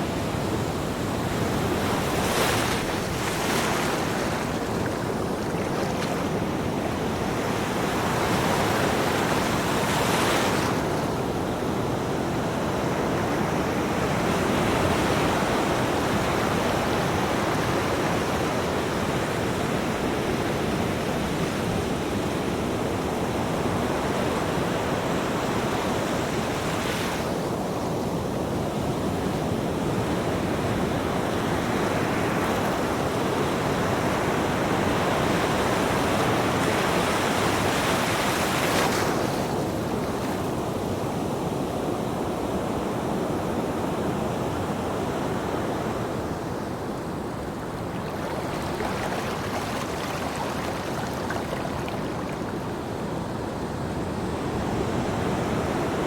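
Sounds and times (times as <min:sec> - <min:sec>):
waves breaking: 0:00.0 - 0:17.8, 0:33.7 - 0:40.9, 0:45.3 - 0:56.0
waves hissing as they wash in: 0:00.7 - 0:11.3, 0:45.9 - 0:56.0.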